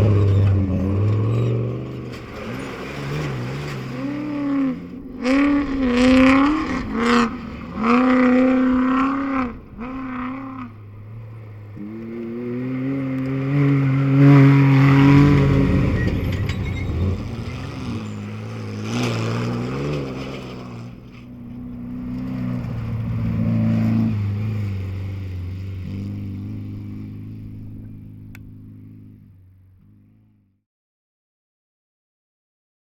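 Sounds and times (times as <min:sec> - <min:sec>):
race vehicle engines revving: 0:00.0 - 0:30.5.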